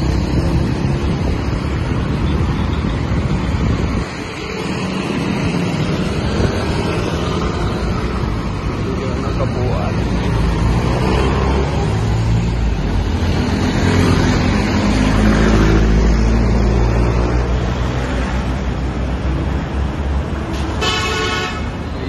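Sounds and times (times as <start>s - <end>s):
road traffic: 0.0s - 22.0s
car horn honk: 20.8s - 21.7s.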